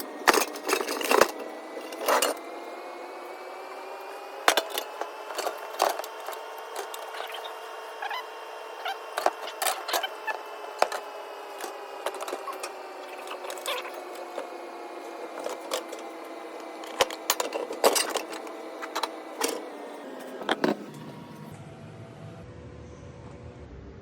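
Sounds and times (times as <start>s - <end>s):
tools and metal parts clicking: 0.0s - 2.4s, 4.5s - 7.4s, 9.2s - 14.5s, 15.3s - 16.1s, 16.8s - 19.6s
steady hum: 0.0s - 24.0s.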